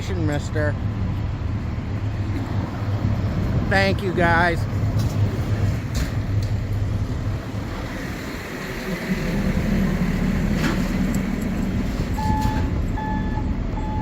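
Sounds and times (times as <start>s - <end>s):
fire truck engine rumbling: 0.0s - 14.0s
backup alarm beeps: 12.2s - 14.0s.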